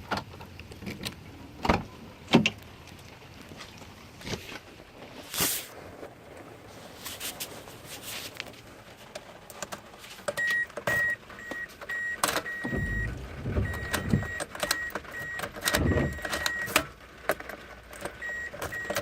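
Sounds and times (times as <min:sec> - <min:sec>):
car warning chime beeping: 0:10.4 - 0:16.8, 0:18.2 - 0:19.0
short low rumbles: 0:12.6 - 0:14.4.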